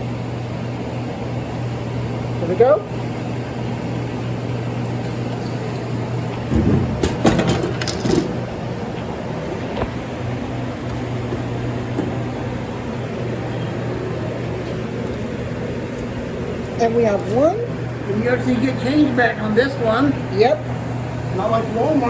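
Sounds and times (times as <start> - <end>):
vending machine low hum: 0.0 - 22.0
rattling clinking clatter: 6.5 - 8.4.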